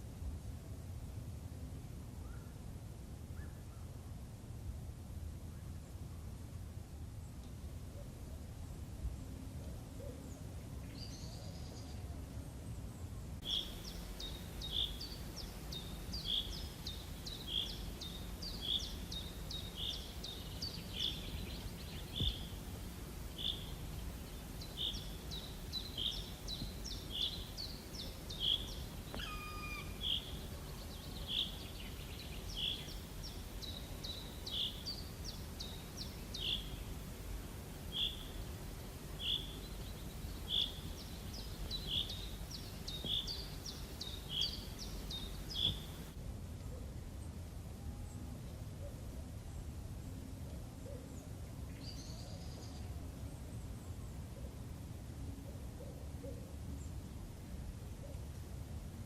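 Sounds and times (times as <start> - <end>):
low background rumble: 11.8 - 48.6
small bird chirping: 13.4 - 37.1, 37.9 - 46.2.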